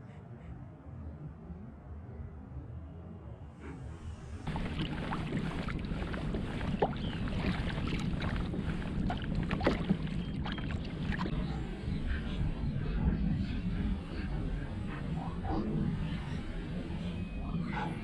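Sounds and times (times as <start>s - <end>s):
paddle splashing water: 4.5s - 11.3s
wash of water: 4.5s - 11.3s.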